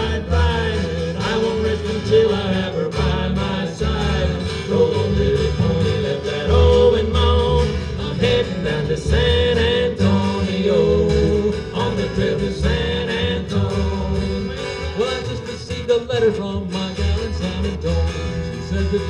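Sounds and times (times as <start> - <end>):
guitar accompaniment: 0.0 - 19.0
harmony singing: 0.0 - 19.0.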